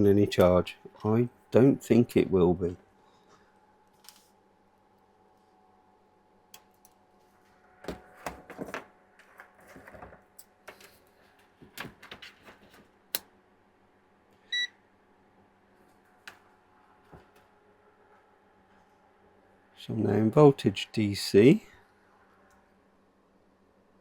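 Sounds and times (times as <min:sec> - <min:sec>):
multimeter electronic beep: 0:14.5 - 0:14.8.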